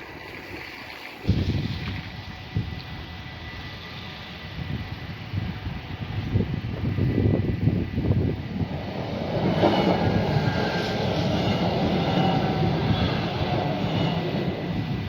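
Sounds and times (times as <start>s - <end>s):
rushing rail noise: 0.0s - 15.0s
train passing with low rumble: 0.0s - 15.0s
faint high whine: 1.7s - 15.0s
wheels clattering over rails: 8.5s - 15.0s.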